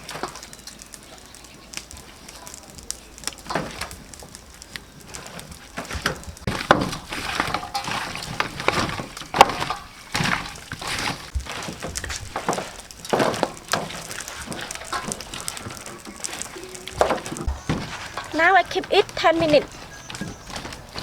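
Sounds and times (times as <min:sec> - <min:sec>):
utensils clinking against bowl: 0:05.0 - 0:21.0.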